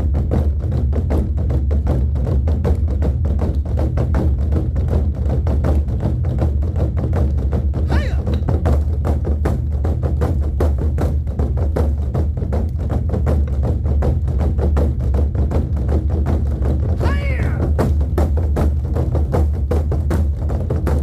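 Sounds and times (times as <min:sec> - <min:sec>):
large drums beaten fast: 0:00.0 - 0:21.0
high call: 0:07.9 - 0:08.4, 0:17.0 - 0:17.8.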